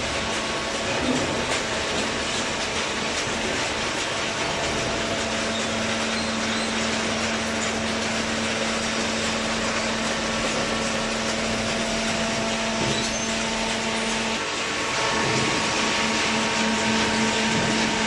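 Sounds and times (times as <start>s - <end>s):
baler machine running: 0.0s - 18.0s.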